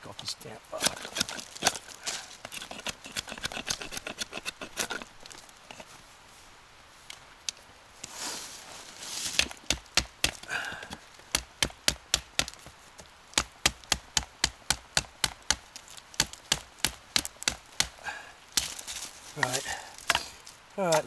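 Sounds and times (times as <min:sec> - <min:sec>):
scraping rustle: 0:00.7 - 0:09.7, 0:15.6 - 0:21.0
knife chopping wood: 0:00.8 - 0:05.8, 0:09.3 - 0:21.0.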